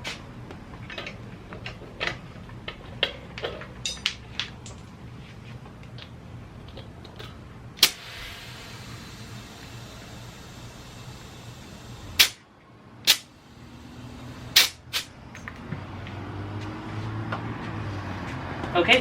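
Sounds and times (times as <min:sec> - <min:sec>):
tools clicking and knocking: 0:00.7 - 0:04.9
faint hiss of air: 0:07.8 - 0:12.4, 0:13.0 - 0:15.1
sharp snap: 0:12.2 - 0:12.4, 0:13.1 - 0:13.3, 0:14.6 - 0:15.1.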